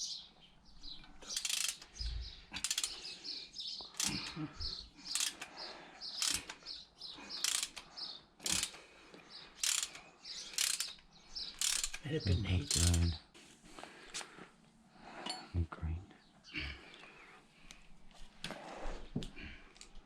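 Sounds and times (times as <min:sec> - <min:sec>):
ratchet rasping: 0:01.2 - 0:03.2, 0:03.9 - 0:04.4, 0:05.1 - 0:05.5, 0:06.1 - 0:06.6, 0:07.4 - 0:08.8, 0:09.6 - 0:13.1.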